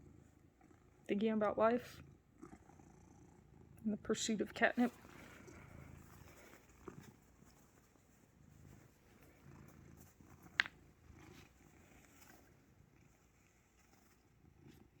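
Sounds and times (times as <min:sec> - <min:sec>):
cat purring faintly: 0:00.0 - 0:15.0.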